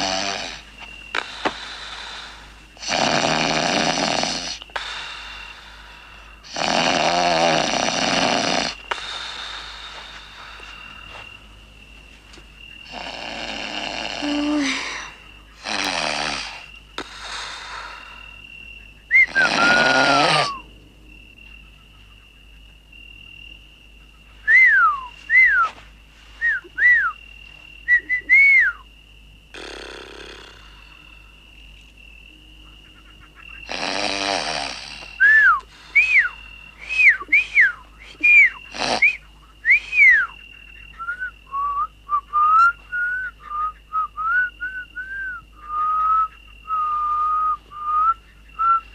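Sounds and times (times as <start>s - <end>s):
man snoring: 0.0s - 0.6s, 1.2s - 5.6s, 6.4s - 10.4s, 12.9s - 18.2s, 19.2s - 20.6s, 29.5s - 31.0s, 33.7s - 35.5s, 38.7s - 39.2s
whistling while sleeping: 19.1s - 20.7s, 24.4s - 25.8s, 26.4s - 27.2s, 27.8s - 28.9s, 34.5s - 48.9s.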